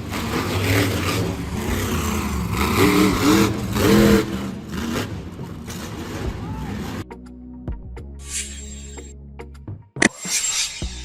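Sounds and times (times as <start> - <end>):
truck engine revving: 0.0 - 7.2.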